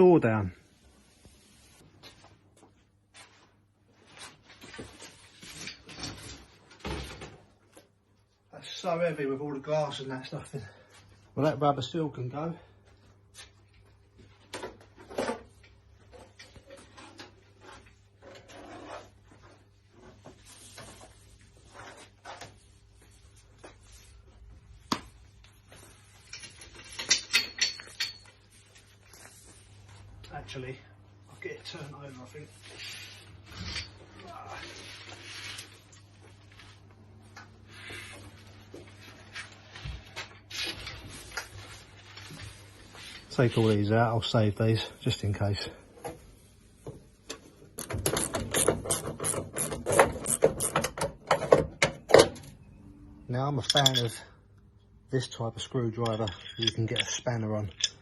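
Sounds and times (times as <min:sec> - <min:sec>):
clicks and scrapes of parts: 0:47.3 - 0:51.6, 0:56.0 - 0:58.0
metallic clicks and rattles: 0:56.0 - 0:58.0.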